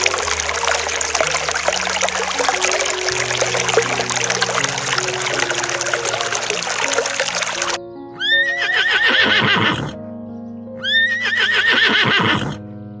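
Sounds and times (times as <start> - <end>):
background music: 0.0 - 13.0
animal whinnying: 8.2 - 10.0, 10.8 - 12.6.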